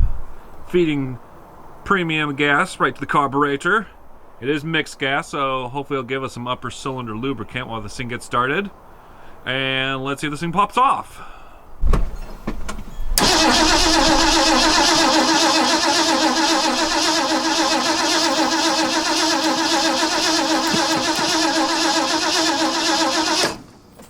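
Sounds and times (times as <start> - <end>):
engine starter cranking: 13.1 - 23.9.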